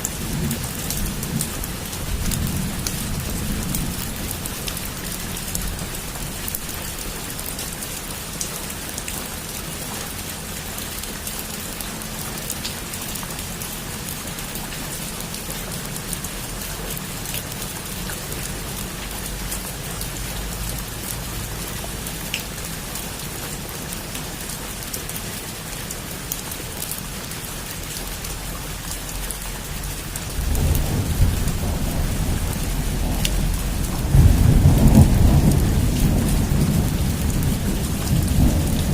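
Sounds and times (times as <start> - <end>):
heavy rain falling: 0.0 - 38.9
low thunder rumble: 30.2 - 38.9.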